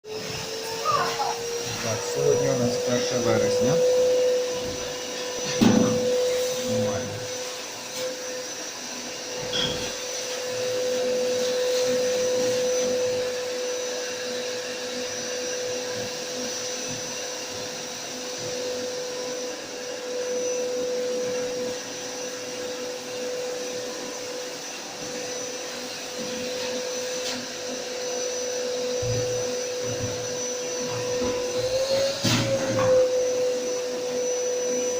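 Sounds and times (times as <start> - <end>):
electric motor whining: 0.1 - 13.6.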